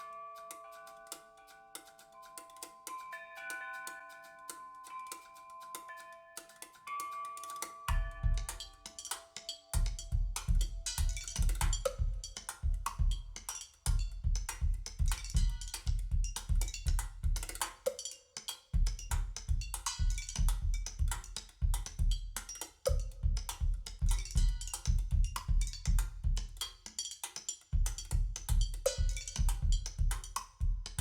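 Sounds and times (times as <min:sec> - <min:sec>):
drum-led music over loudspeakers: 0:07.9 - 0:08.6, 0:09.8 - 0:17.7.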